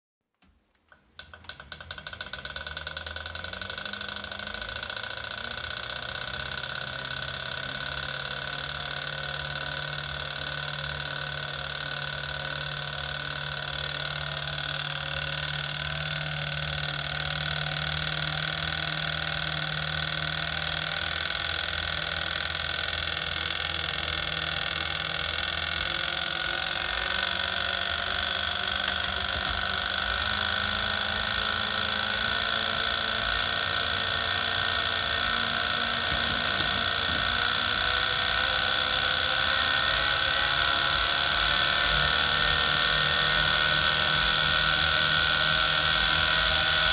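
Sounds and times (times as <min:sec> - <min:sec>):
bike trainer roller whine: 0:00.9 - 0:46.9
fast even clicking: 0:26.6 - 0:39.2.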